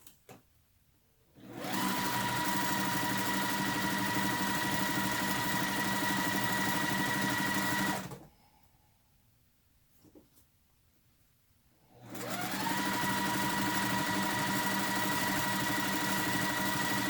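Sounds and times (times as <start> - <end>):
electric sewing machine stitching: 1.4 - 8.3, 12.0 - 17.0.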